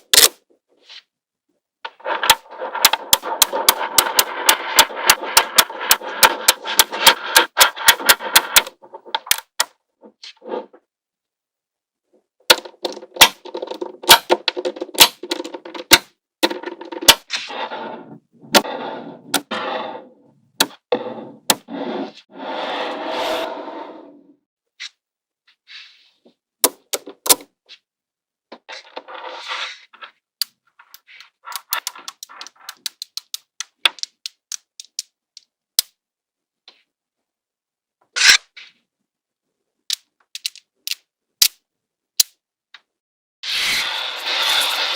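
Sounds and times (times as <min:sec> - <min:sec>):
magnetic balls snapping and clattering: 0:12.5 - 0:17.3, 0:30.4 - 0:36.0, 0:39.9 - 0:41.6, 0:42.2 - 0:42.4.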